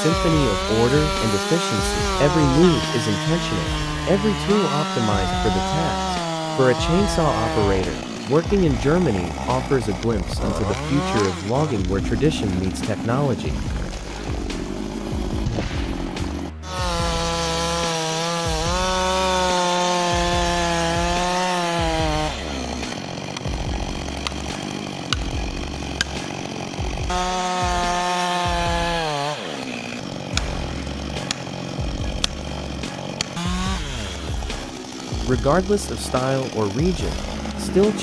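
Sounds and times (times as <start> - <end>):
chainsaw cutting wood: 0.0 - 38.0
sharp clicks: 22.5 - 27.2, 30.2 - 35.3.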